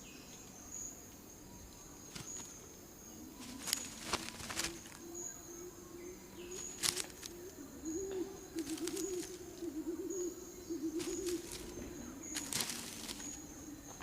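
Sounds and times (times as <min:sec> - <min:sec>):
thin high insect-like tone: 0:00.0 - 0:14.0
twigs crackling and snapping: 0:02.1 - 0:02.7, 0:03.3 - 0:05.2, 0:06.4 - 0:07.6, 0:08.5 - 0:09.8, 0:10.8 - 0:14.0
bird warbling call: 0:03.3 - 0:13.7.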